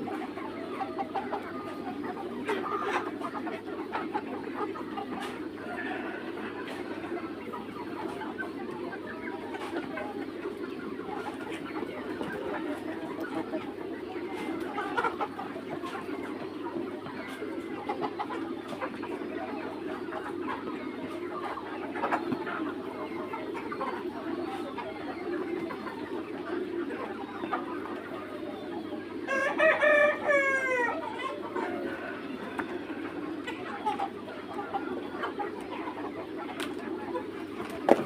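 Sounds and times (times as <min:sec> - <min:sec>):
chickens clucking: 0:00.0 - 0:38.0
rooster crowing: 0:29.3 - 0:31.0.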